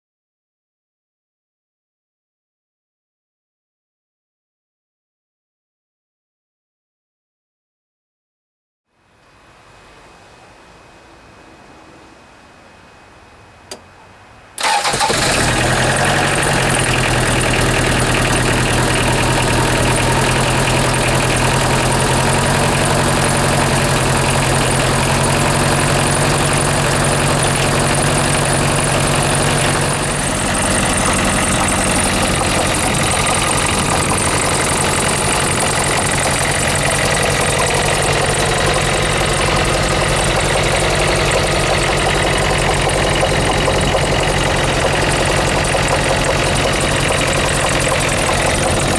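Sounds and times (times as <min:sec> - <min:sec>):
diesel engine idling with knock: 0:14.6 - 0:48.9.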